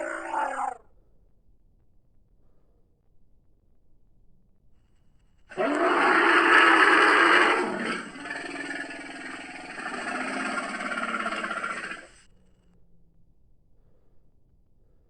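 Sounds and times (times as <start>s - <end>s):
creature roaring and growling: 0.0s - 0.8s, 5.5s - 12.1s.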